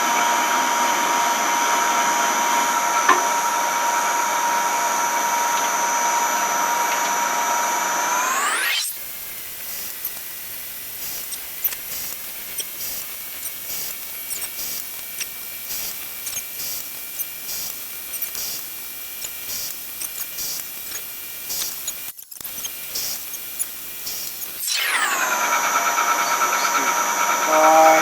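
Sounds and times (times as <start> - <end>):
faint high whine: 7.6 - 28.0
small ticks: 8.4 - 25.2
steady hiss: 8.9 - 24.6.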